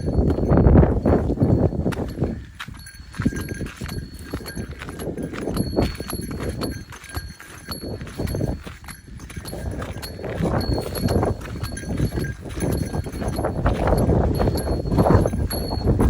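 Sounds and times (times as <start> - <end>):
footsteps on trail: 0.0 - 16.0
small bell jingling: 0.0 - 16.0
wind buffeting microphone: 0.0 - 16.0.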